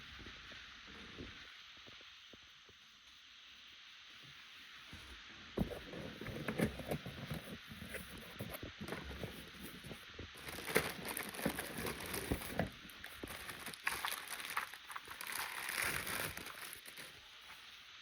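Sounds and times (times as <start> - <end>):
handling clicks and rustling: 5.6 - 17.2.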